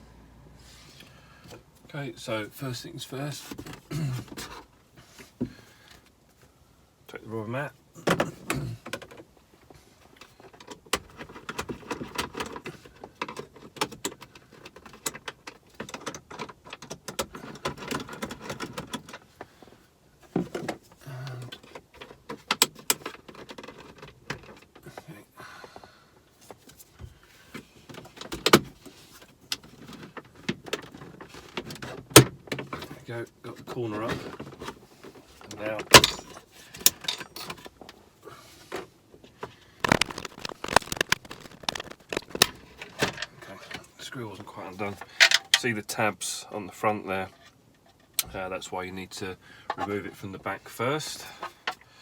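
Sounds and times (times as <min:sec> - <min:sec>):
plastic trim clicks and scrapes: 0:39.8 - 0:43.1.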